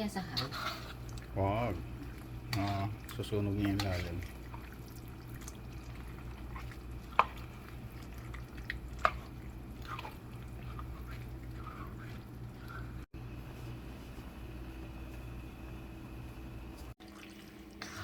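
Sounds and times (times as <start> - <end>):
steady low hum: 0.0 - 17.0
thick stew bubbling: 0.4 - 13.1.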